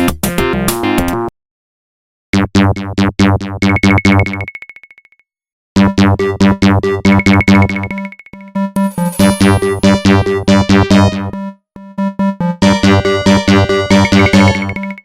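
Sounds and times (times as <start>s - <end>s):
mobile phone ringtone melody: 7.2s - 11.4s, 13.1s - 15.0s.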